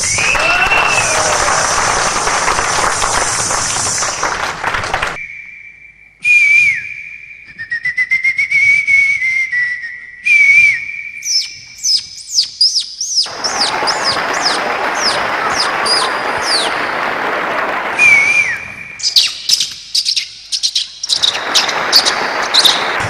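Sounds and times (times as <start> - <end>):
person whistling bird-like chirps: 0.0 - 1.9, 5.2 - 13.3.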